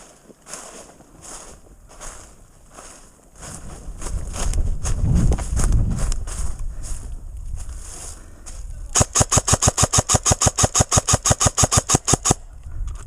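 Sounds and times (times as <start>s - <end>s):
airsoft gun firing: 9.0s - 12.4s.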